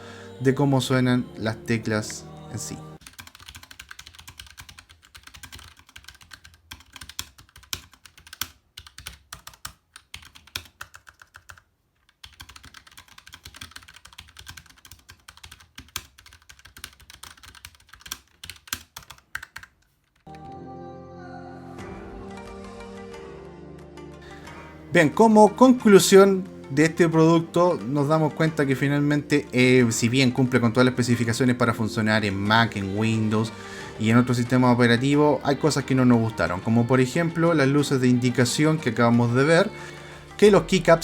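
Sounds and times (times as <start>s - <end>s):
background music: 0.0s - 3.1s, 20.3s - 41.0s
mechanical keyboard typing: 3.0s - 20.5s.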